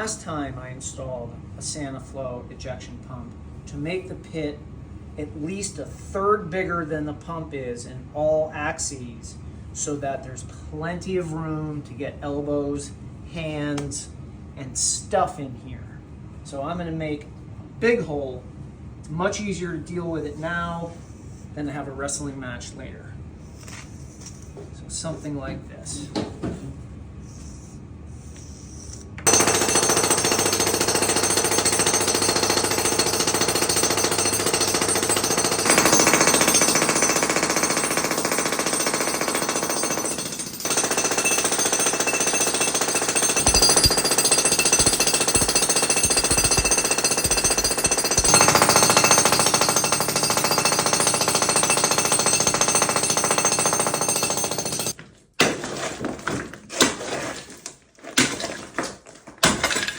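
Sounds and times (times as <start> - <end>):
jackhammer breaking concrete: 29.3 - 57.5, 58.1 - 59.9.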